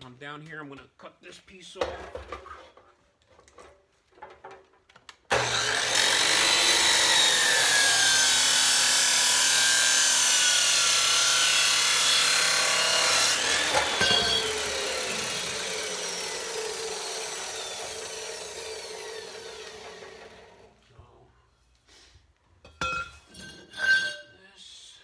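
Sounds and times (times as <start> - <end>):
power saw cutting metal tube: 5.3 - 20.7.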